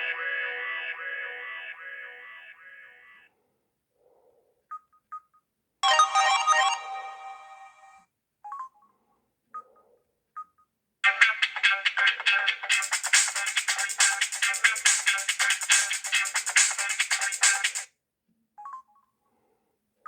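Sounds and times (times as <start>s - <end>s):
bright chime-like ringtone: 5.8s - 8.0s
phone ringtone melody: 5.8s - 8.0s.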